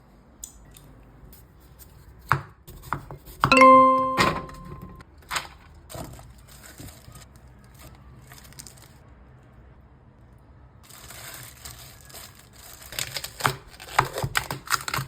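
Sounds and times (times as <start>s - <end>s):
metal utensil ringing ding: 3.5s - 4.9s.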